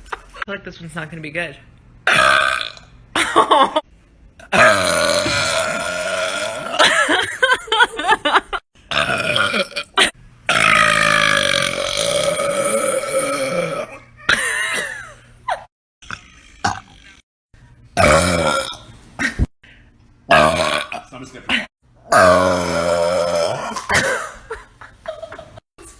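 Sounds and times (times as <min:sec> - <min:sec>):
woman belching: 0:02.1 - 0:02.9, 0:04.5 - 0:07.2, 0:08.9 - 0:15.1, 0:16.0 - 0:17.1, 0:18.0 - 0:18.8, 0:20.3 - 0:21.1, 0:22.1 - 0:24.4.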